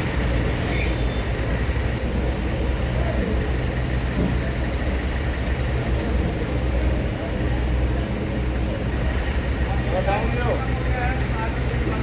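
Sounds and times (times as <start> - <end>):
heavy diesel engine humming: 0.0 - 12.0.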